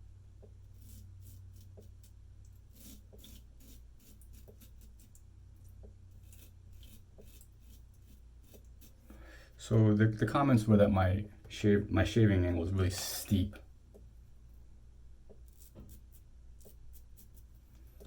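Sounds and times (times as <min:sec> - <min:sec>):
steady low hum: 0:00.0 - 0:18.0
razor scraping stubble: 0:00.6 - 0:09.2, 0:15.3 - 0:18.0.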